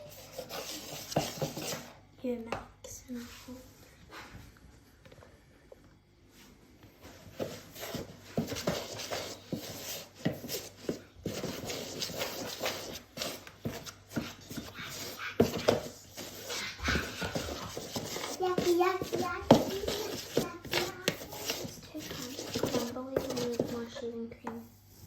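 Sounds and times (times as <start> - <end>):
spoon scraping mixture in bowl: 0.0 - 2.0, 7.1 - 24.1.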